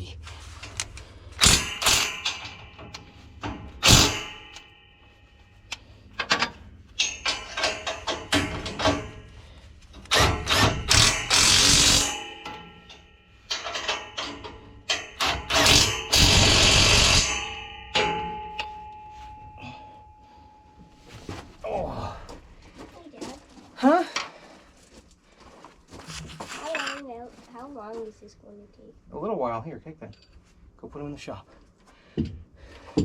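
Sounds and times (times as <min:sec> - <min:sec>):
metal tools clanking and knocking: 0:00.6 - 0:22.7, 0:26.1 - 0:27.1.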